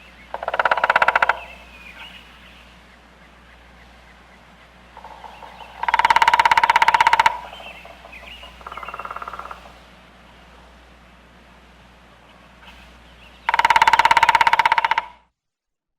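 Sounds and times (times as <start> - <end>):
faint bird chirps: 0.0 - 10.4
woodpecker drumming on wood: 0.3 - 2.3, 4.1 - 9.8, 13.3 - 15.2.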